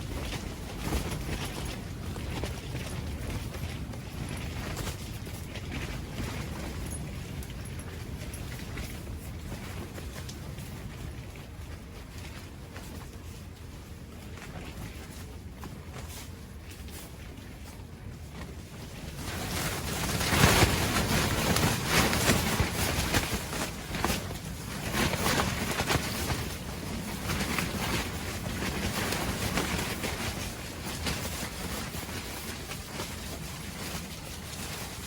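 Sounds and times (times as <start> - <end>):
wind buffeting the microphone: 0.0 - 35.0
strong gusty wind: 17.9 - 35.0.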